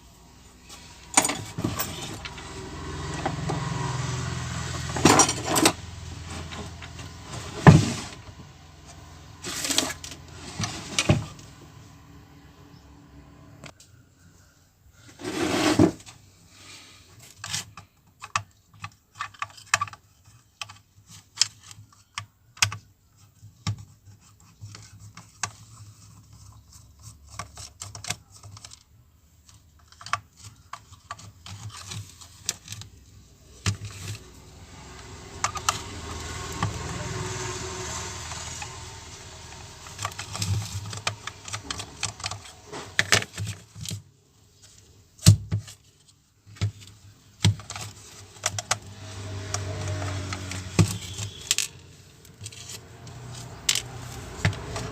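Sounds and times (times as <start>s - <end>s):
plastic parts clicking: 39.4s - 44.0s.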